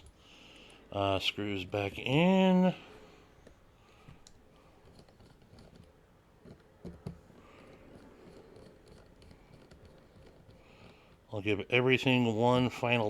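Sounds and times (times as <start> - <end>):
small screw clicks and taps: 3.4 - 11.3.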